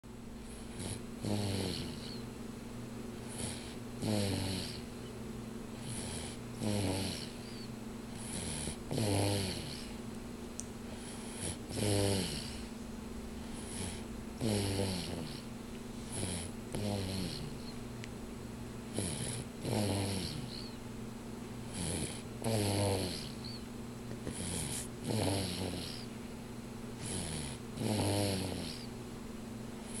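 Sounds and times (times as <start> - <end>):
person snoring: 0.5 - 2.2, 3.3 - 4.9, 5.8 - 10.0, 10.9 - 12.7, 13.5 - 15.4, 16.1 - 17.7, 19.0 - 20.8, 21.7 - 23.6, 24.3 - 26.1, 27.0 - 28.9.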